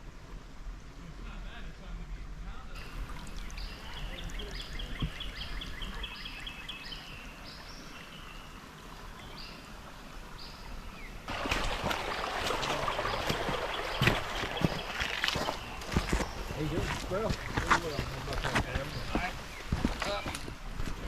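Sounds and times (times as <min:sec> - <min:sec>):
faint steady hiss: 0:00.0 - 0:21.0
high chirping calls: 0:02.8 - 0:08.5.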